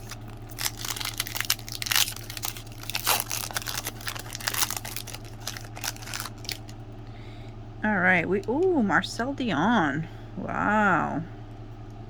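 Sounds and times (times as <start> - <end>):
card wrapper crinkling: 0.0 - 6.8
low electrical hum: 0.0 - 12.0.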